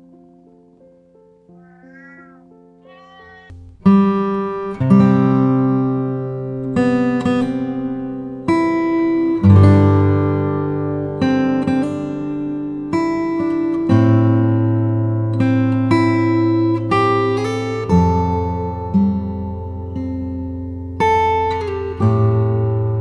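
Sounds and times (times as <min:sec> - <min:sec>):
cat meowing: 0:01.5 - 0:03.6.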